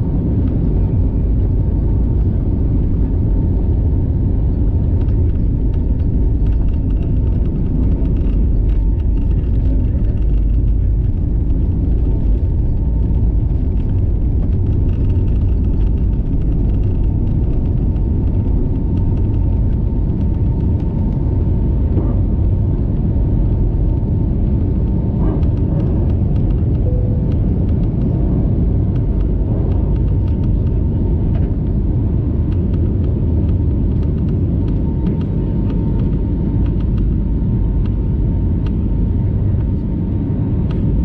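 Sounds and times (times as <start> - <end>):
airplane cabin rumble: 0.0 - 41.0
faint steady whine: 0.0 - 41.0.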